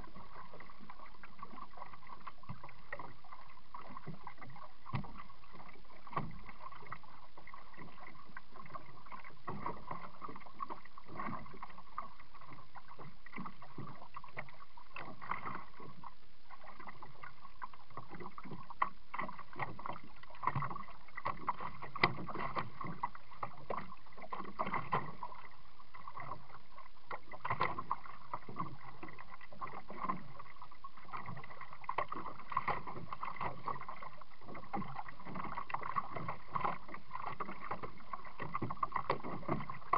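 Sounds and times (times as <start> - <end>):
water splashes: 0.0 - 39.9
paddle knocking on hull: 18.0 - 26.5, 27.1 - 39.9.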